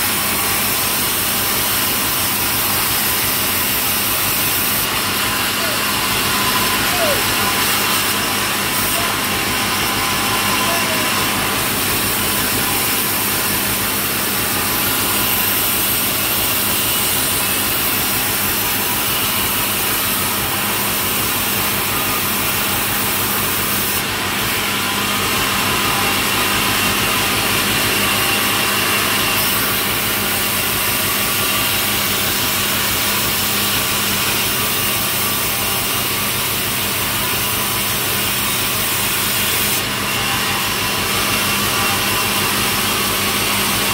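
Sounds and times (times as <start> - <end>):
blade cutting through log: 0.0 - 43.9
saw motor humming: 0.0 - 43.9.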